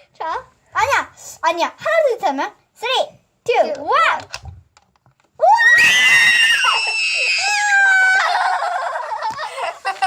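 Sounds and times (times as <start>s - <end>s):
children screaming: 5.4s - 9.3s.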